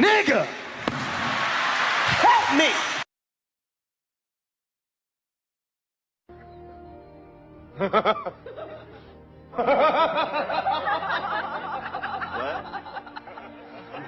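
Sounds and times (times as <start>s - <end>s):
faint background music: 6.3s - 14.0s
laughter sound effect: 7.7s - 14.0s.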